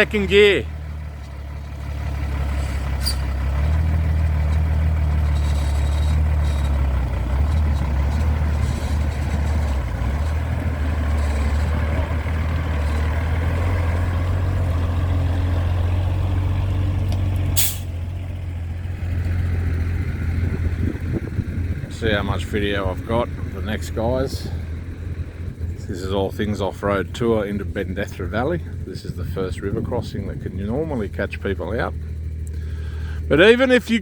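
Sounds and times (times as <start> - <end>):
vehicle engine under load: 0.0 - 34.0.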